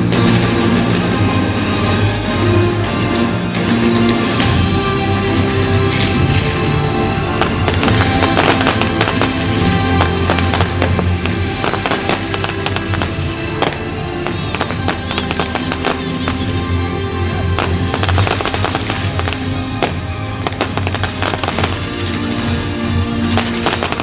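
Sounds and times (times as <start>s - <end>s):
fireworks bangs and crackles: 0.0s - 2.2s, 5.8s - 24.0s
loud show music: 0.0s - 24.0s.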